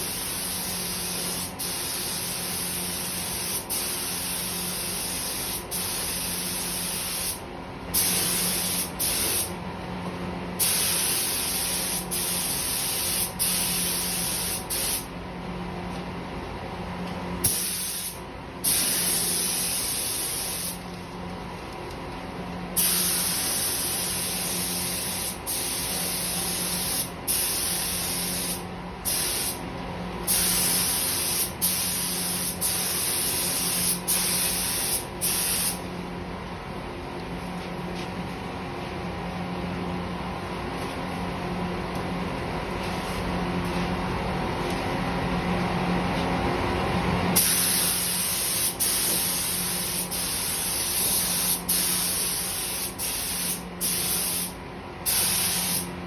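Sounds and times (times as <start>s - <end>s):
spray gun hissing: 0.0s - 7.4s, 10.6s - 15.0s, 17.5s - 20.8s, 47.4s - 54.5s, 55.1s - 55.9s.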